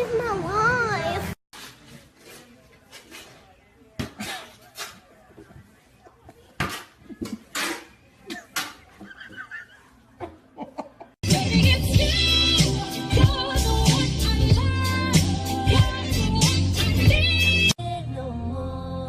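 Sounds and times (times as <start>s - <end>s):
person laughing: 9.0s - 11.2s.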